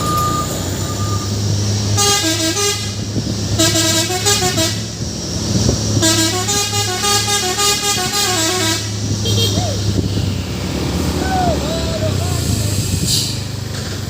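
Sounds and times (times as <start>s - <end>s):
truck multi-tone horn playing a tune: 0.0s - 5.0s, 5.9s - 10.2s
truck engine running: 0.0s - 14.0s.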